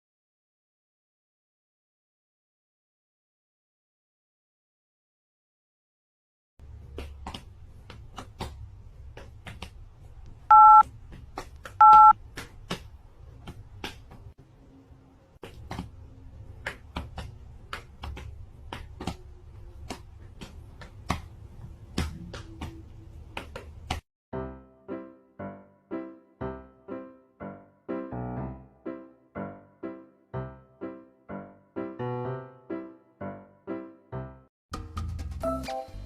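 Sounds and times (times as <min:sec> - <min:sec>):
telephone keypad tones: 0:10.5 - 0:10.8, 0:11.8 - 0:12.1.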